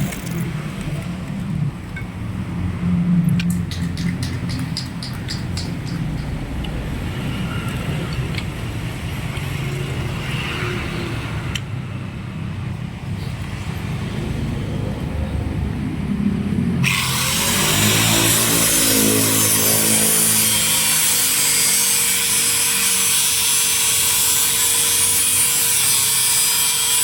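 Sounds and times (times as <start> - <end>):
vehicle engine rumbling: 0.0 - 19.6
power tool hissing grind: 16.8 - 27.0.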